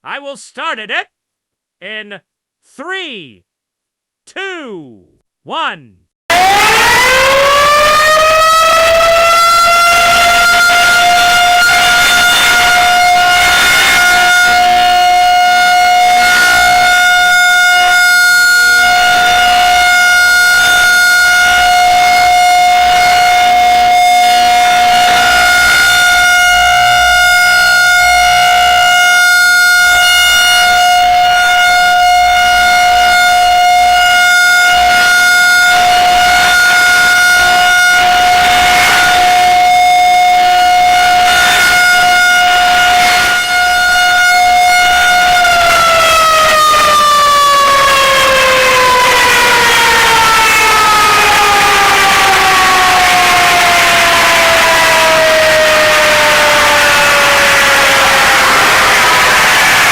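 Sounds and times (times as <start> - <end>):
harsh buzzy alarm tone: 6.3 - 59.9.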